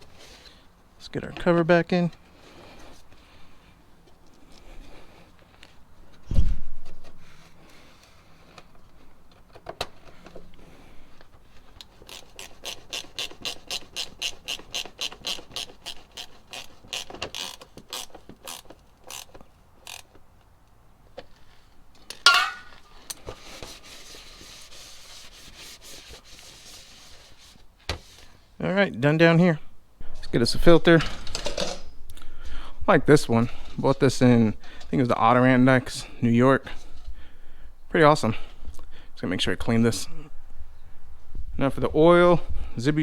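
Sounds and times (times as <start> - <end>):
ratchet wrench clicking: 12.1 - 20.2
sharp ringing clank: 22.3 - 22.8.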